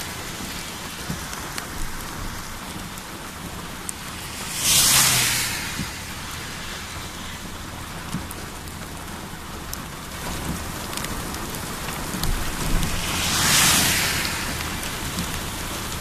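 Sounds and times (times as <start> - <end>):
low rumble: 0.0 - 9.7, 12.3 - 15.8
steady rain falling: 0.0 - 16.0
loud hiss: 3.6 - 8.1, 12.5 - 16.0.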